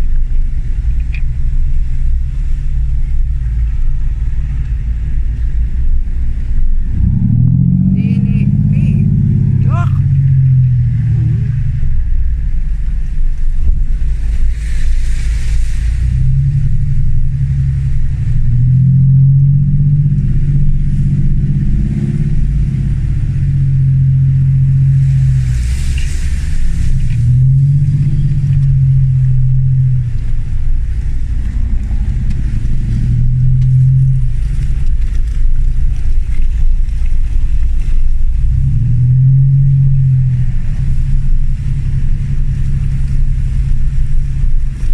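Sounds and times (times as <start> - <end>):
diesel engine revving under load: 6.4 - 12.6, 14.4 - 36.5, 38.4 - 44.9.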